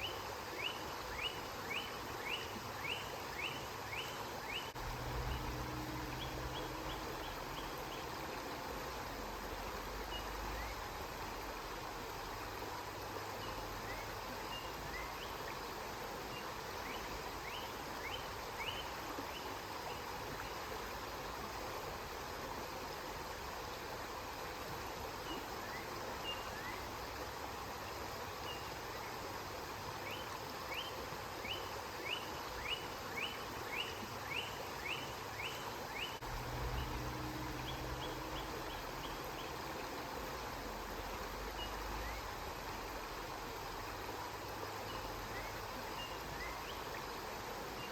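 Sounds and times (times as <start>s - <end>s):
river water flowing: 0.0s - 47.9s
low hum: 4.8s - 8.1s, 36.2s - 39.6s.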